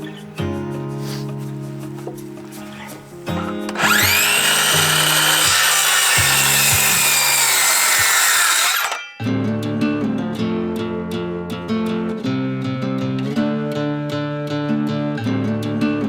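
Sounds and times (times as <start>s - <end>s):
guitar music: 0.0s - 16.0s
power saw cutting wood: 3.6s - 9.1s.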